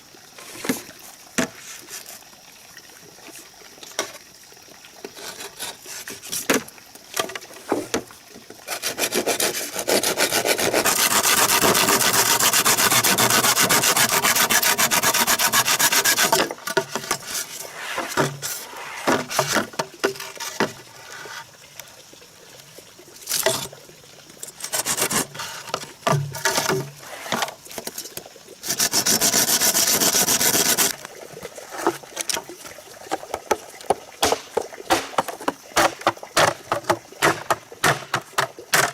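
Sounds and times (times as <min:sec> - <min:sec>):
saw cutting bamboo: 0:08.7 - 0:20.6, 0:24.6 - 0:27.5, 0:28.6 - 0:31.0, 0:34.2 - 0:38.9
bamboo knocking: 0:34.2 - 0:38.9.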